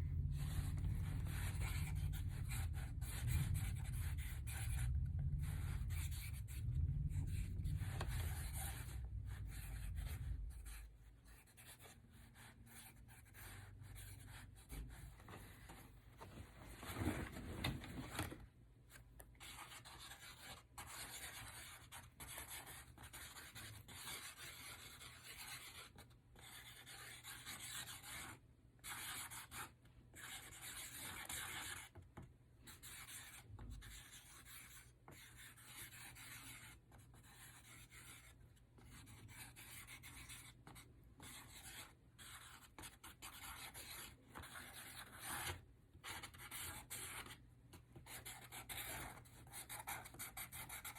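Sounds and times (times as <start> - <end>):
marker scratching on paper: 0.2 - 15.8, 19.4 - 50.9.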